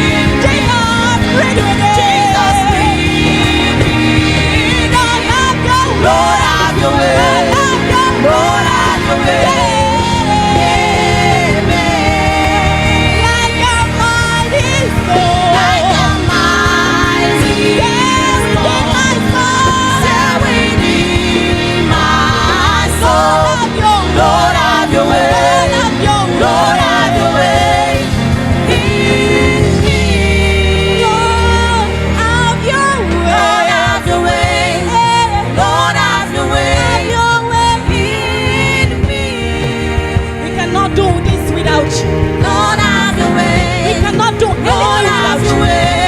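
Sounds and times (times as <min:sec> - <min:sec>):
band accompaniment with bass: 0:00.0 - 0:46.0
gospel singing: 0:00.0 - 0:46.0.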